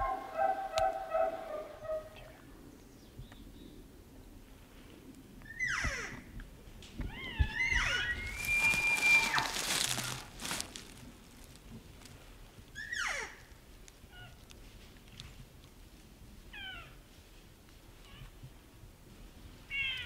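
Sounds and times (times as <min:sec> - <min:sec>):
elk mewing: 0:07.4 - 0:11.0
elk bugling: 0:07.5 - 0:10.4.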